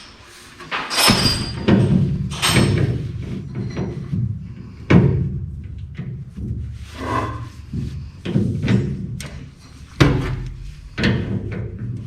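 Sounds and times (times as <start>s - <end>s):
loud thumps: 1.0s - 2.9s, 7.7s - 11.8s.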